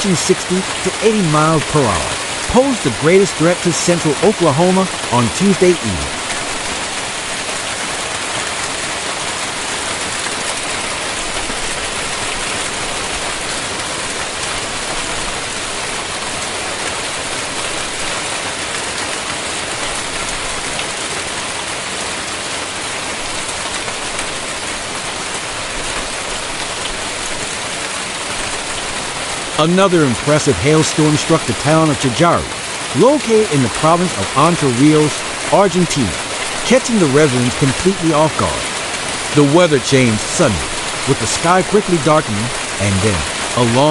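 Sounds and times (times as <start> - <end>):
hail and heavy rain pelting: 0.0 - 43.9.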